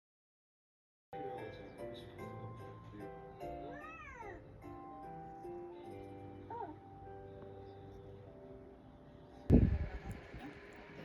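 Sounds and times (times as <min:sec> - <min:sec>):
soft background music: 0:01.2 - 0:11.0.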